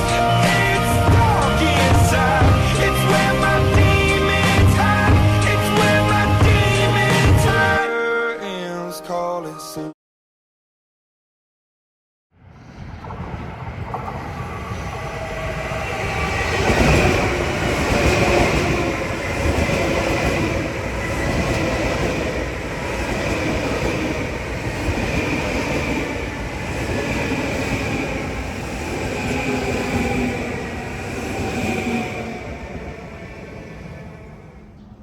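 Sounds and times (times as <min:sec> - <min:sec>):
train passing: 0:00.0 - 0:07.8, 0:12.4 - 0:35.0.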